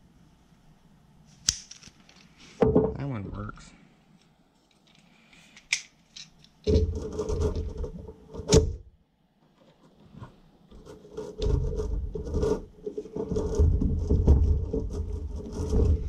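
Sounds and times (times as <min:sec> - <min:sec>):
plastic parts rubbing and scraping: 0:04.6 - 0:08.6, 0:09.5 - 0:16.0.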